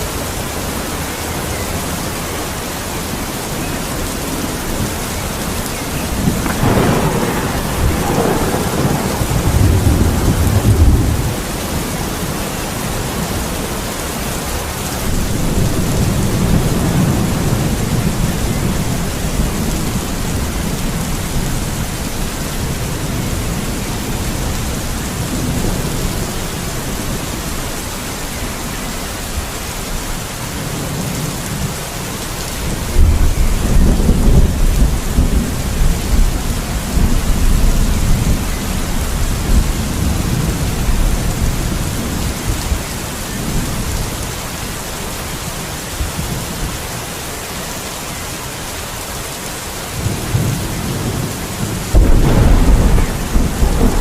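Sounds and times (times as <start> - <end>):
steady rain: 0.0 - 54.0
rolling thunder: 6.0 - 14.2, 15.0 - 27.3, 32.7 - 44.1, 50.0 - 54.0.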